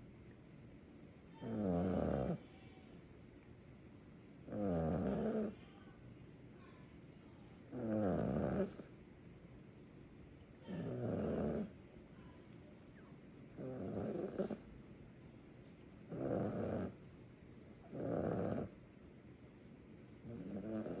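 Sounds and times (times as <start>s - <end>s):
small dog snoring: 1.4s - 2.4s, 4.4s - 5.6s, 7.6s - 8.9s, 10.6s - 11.8s, 13.5s - 14.7s, 15.9s - 17.0s, 17.8s - 18.8s, 20.2s - 21.0s.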